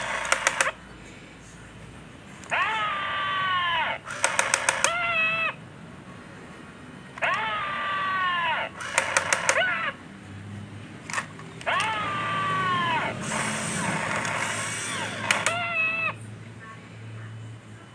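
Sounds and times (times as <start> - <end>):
quick clicks: 0.0 - 0.8, 4.1 - 5.0, 8.7 - 9.9, 11.0 - 12.2, 13.2 - 15.7
toy electronic roar: 0.0 - 0.8, 2.4 - 5.6, 7.2 - 10.0, 11.1 - 16.2.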